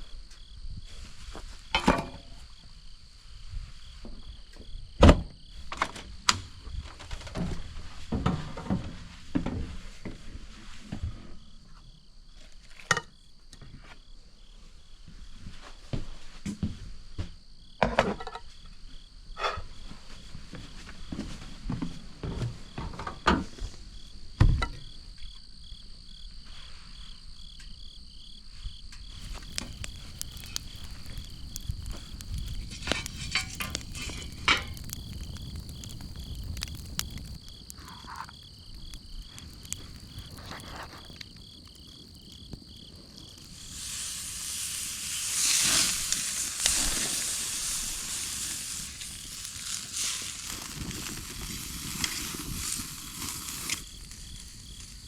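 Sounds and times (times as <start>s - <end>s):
insects chirping: 0.0s - 55.0s
steak sizzling over fire: 0.4s - 12.4s, 29.0s - 55.0s.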